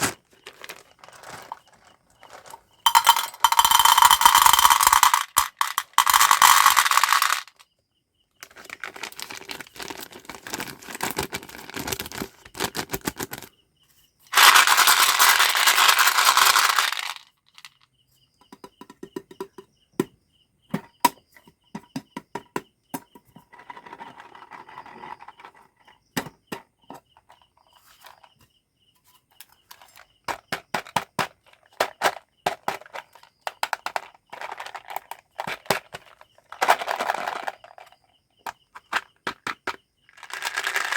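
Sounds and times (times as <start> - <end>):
wrappers crinkling and rustling: 0.0 - 2.6, 8.4 - 13.5.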